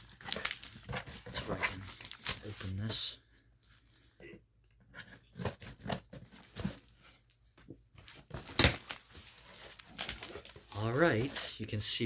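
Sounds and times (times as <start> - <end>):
cardboard tearing and crinkling: 0.0 - 2.8, 8.1 - 11.5.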